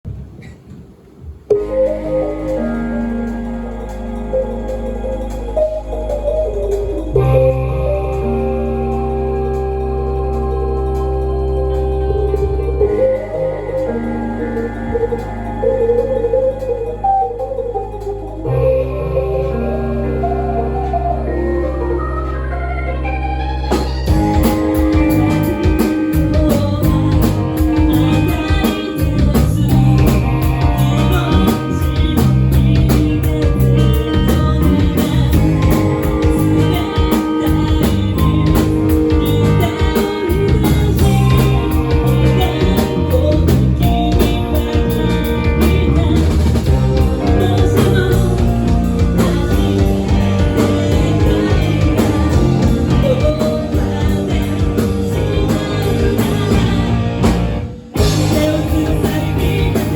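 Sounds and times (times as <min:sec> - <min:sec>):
person singing: 0:01.5 - 0:59.9
rock band playing live: 0:18.0 - 0:59.9.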